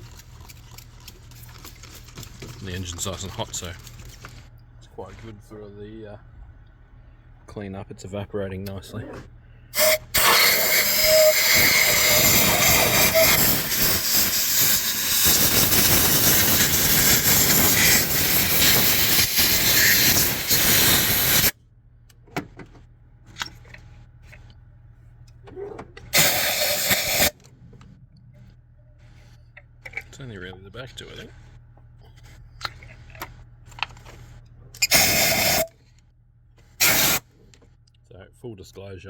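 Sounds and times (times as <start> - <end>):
compressed air blow gun hissing: 9.8 - 21.5, 26.2 - 27.3, 34.8 - 35.7, 36.8 - 37.2.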